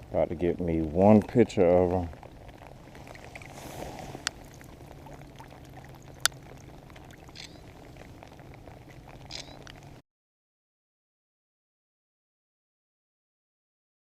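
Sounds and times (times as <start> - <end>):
low steady hum: 0.0 - 10.0
rain patter: 0.0 - 10.0
sharp clicks: 9.3 - 9.8.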